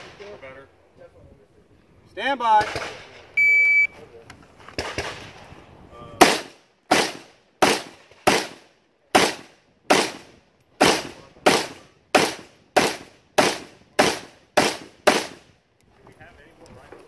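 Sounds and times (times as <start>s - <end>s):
gunshots with echo: 6.2s - 15.4s.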